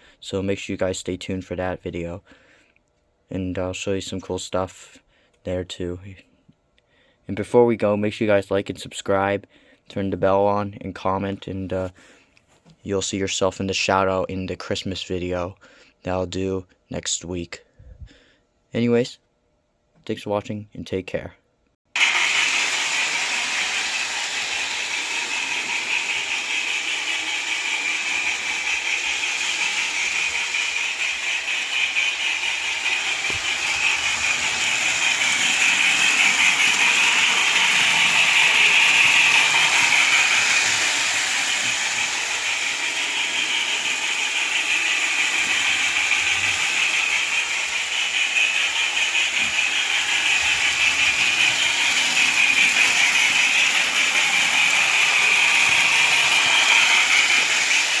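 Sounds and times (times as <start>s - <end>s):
model train whirring on track: 21.9s - 58.0s.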